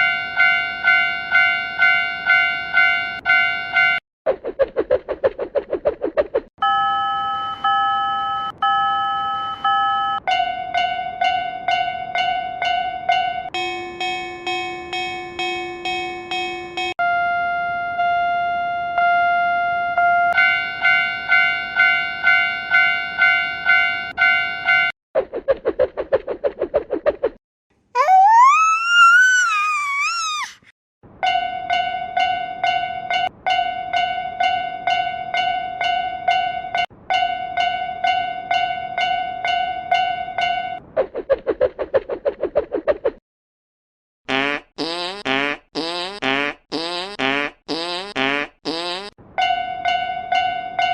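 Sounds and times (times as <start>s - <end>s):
crossing alarm bell dinging: 0.0s - 4.0s, 6.6s - 16.9s, 20.4s - 24.9s
synthesized warning bell ringing: 13.6s - 16.9s.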